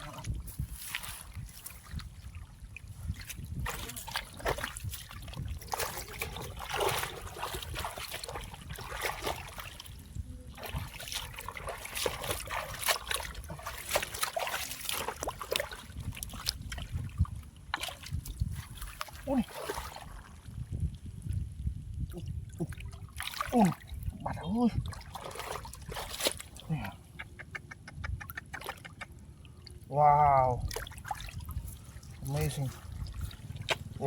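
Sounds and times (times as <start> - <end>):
muddy water splashing: 0.0 - 34.0
steady low rumble: 30.6 - 34.0.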